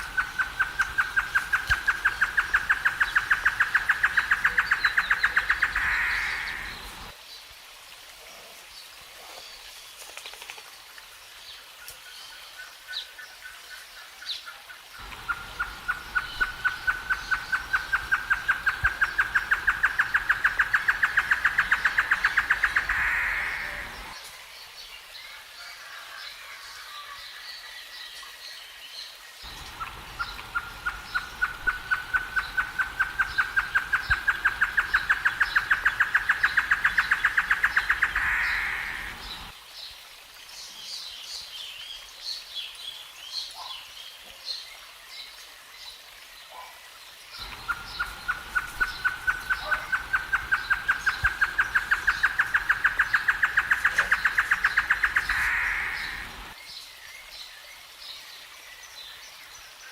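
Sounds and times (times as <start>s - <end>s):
bird song of hooting notes: 0.0s - 7.1s, 15.0s - 24.2s, 29.4s - 39.5s, 47.4s - 56.5s
high bird chirps: 29.4s - 39.5s.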